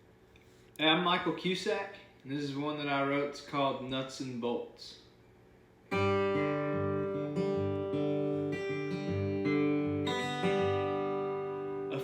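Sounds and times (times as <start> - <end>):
guitar strumming chords: 5.9 - 12.0.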